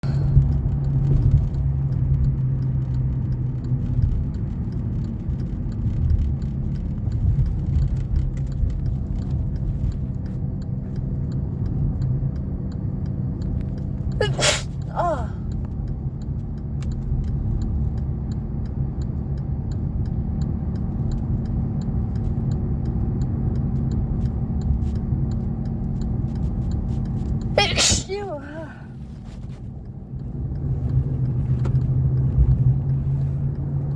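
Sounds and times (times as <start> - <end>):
car engine rumble: 0.0 - 33.9
road noise inside car: 0.0 - 33.9
person sneezing: 14.2 - 15.4, 27.6 - 28.8.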